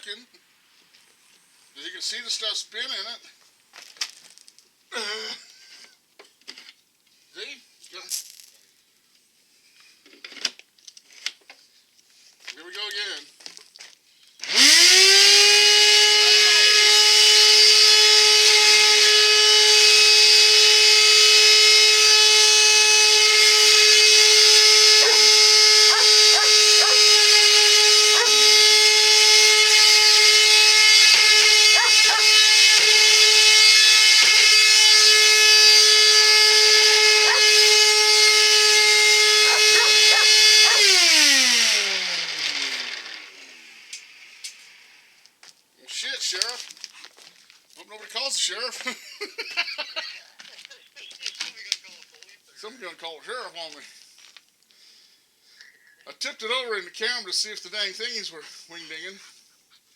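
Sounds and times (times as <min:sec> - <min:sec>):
vacuum cleaner motor whine: 0:14.4 - 0:44.7.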